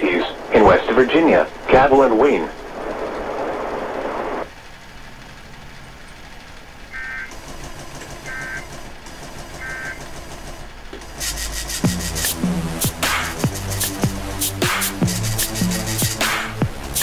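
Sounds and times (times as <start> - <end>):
buzzy data bursts: 0.0 - 4.5, 11.2 - 17.0
radio hiss: 0.0 - 4.6.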